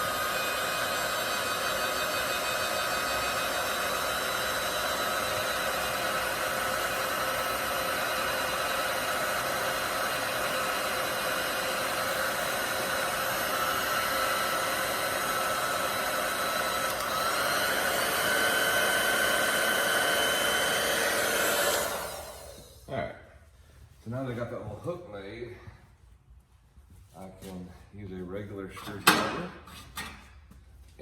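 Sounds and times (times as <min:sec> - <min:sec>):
heat gun blowing with fan whine: 0:00.0 - 0:23.0.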